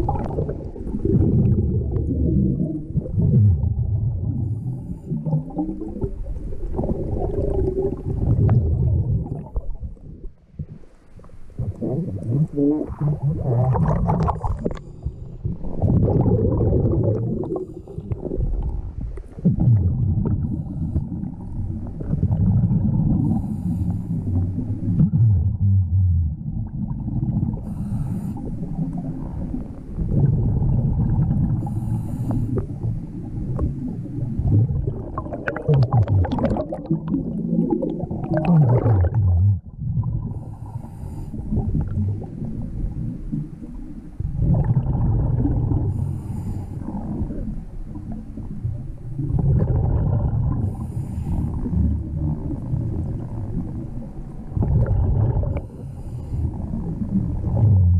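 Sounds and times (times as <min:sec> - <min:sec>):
bubbling exhaled air: 0:00.0 - 0:57.9
faint hissing inhales: 0:23.2 - 0:24.6, 0:27.6 - 0:28.9, 0:31.6 - 0:33.2, 0:40.3 - 0:41.6, 0:45.9 - 0:47.2, 0:50.6 - 0:51.8, 0:55.6 - 0:57.0.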